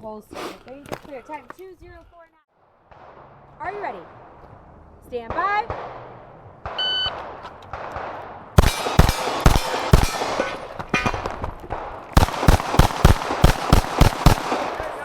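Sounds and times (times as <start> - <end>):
pistol shots: 5.3 - 15.0.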